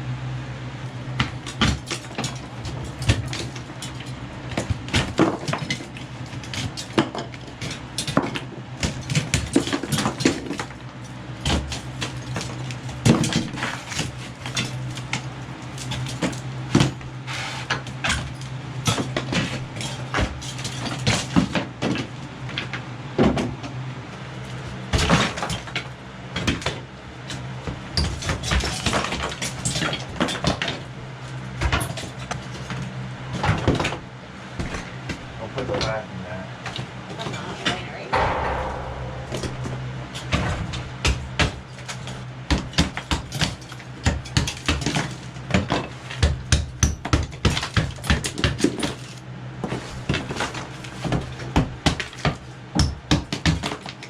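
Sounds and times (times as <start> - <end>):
steady low hum: 38.1 - 43.8.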